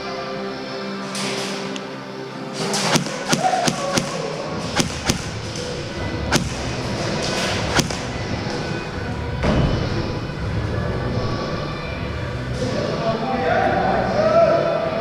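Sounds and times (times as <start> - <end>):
background music: 0.0 - 15.0
airsoft gun shots: 2.7 - 5.5, 6.3 - 6.8, 7.6 - 8.2.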